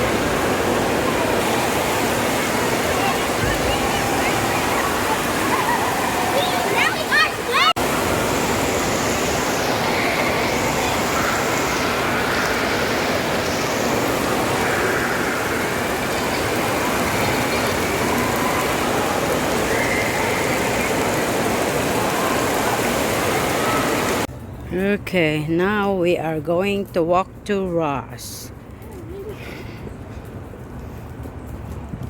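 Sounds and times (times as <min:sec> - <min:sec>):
falling splashing water: 0:00.0 - 0:24.3.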